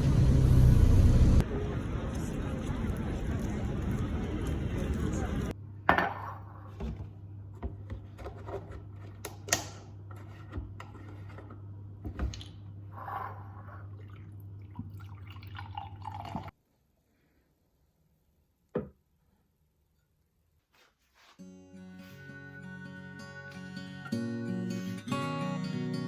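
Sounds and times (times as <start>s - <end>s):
low hum: 0.0s - 5.5s
liquid dripping: 13.9s - 16.5s.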